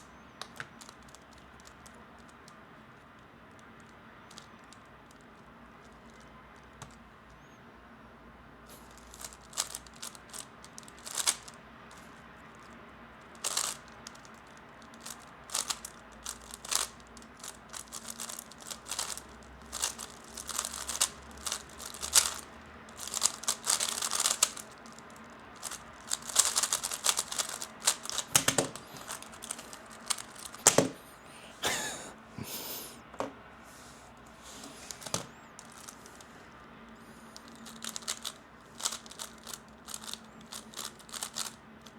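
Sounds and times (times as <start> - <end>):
puzzle cube clicking: 8.9 - 11.5, 13.4 - 14.2, 14.9 - 19.2, 19.8 - 25.0, 25.6 - 31.3, 37.4 - 41.6.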